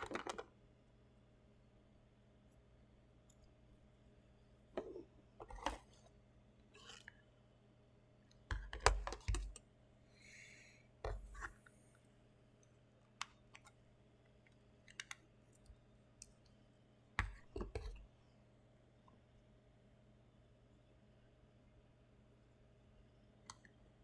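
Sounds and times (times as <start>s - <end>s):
plastic parts clicking and rustling: 0.0s - 0.5s.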